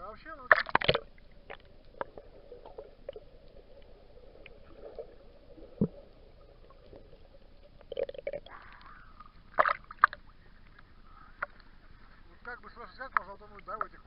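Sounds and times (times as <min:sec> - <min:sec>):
water lapping against boat hull: 0:00.4 - 0:14.0.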